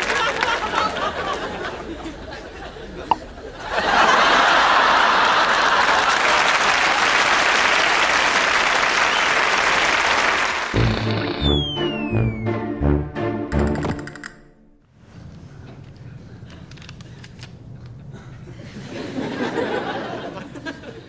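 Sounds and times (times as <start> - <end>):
audience applause: 0.0 - 1.6, 4.1 - 11.8.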